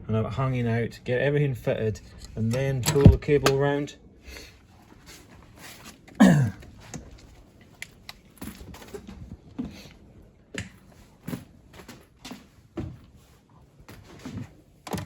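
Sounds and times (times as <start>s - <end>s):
light clicks and knocks of parts: 5.7s - 12.5s.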